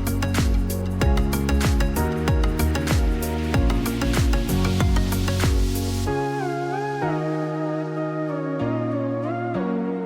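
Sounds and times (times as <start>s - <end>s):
electronic drum beat: 0.0s - 5.9s
gliding lead melody: 0.0s - 10.0s.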